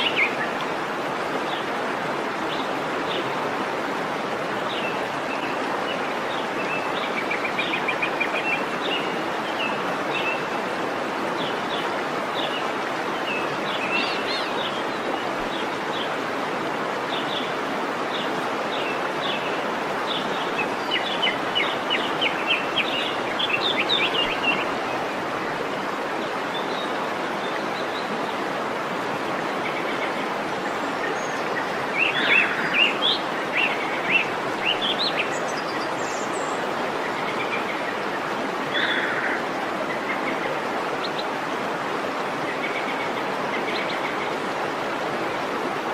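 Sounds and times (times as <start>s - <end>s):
waterfall rushing: 0.0s - 45.9s
birds chirping: 29.6s - 41.4s.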